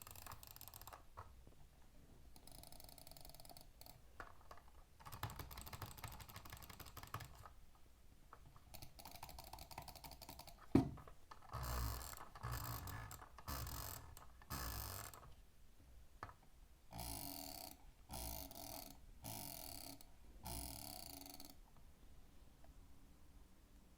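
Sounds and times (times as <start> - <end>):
fast keyboard typing: 0.0 - 1.0, 5.0 - 7.6.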